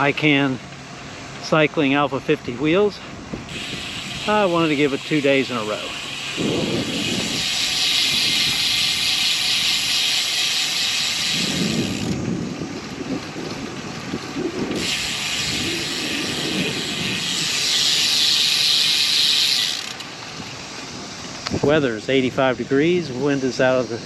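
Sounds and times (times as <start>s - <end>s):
bicycle tyre hiss: 3.0s - 13.6s, 14.4s - 21.7s
low rumbling: 11.3s - 23.5s.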